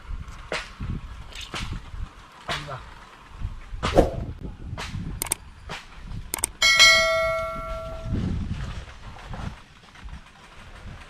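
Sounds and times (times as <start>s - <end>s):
dull low thumps: 3.4s - 5.4s
sharp clicks: 5.2s - 6.6s
metal object struck ringing: 6.6s - 8.2s.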